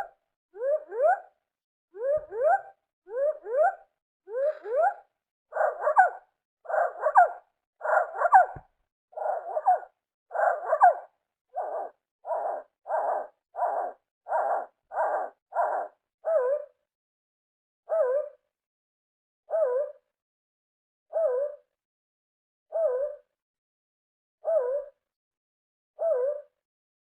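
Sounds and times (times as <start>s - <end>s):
short bark-like bird calls: 0.0s - 1.4s, 2.0s - 16.7s.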